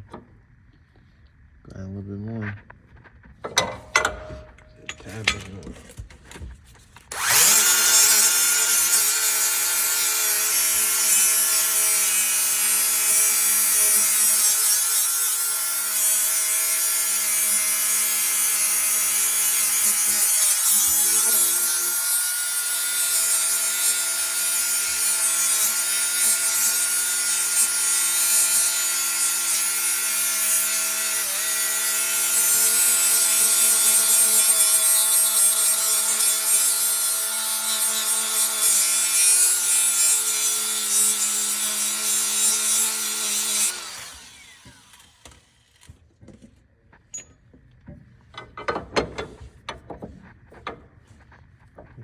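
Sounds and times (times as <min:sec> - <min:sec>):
power grinder grinding metal: 0:07.0 - 0:46.0.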